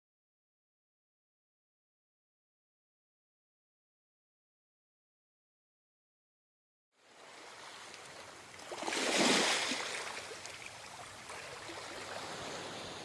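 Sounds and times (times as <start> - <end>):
sea waves breaking on beach: 7.0 - 13.0.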